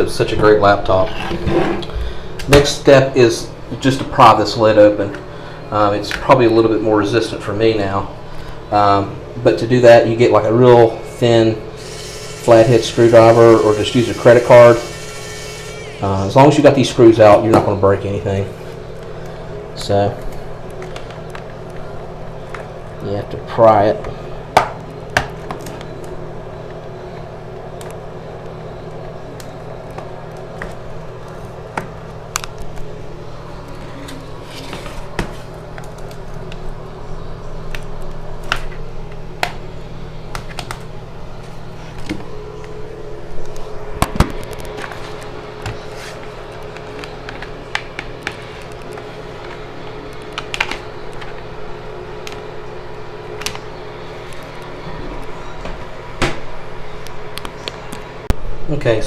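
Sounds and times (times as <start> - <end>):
steady hum: 0.0 - 59.0.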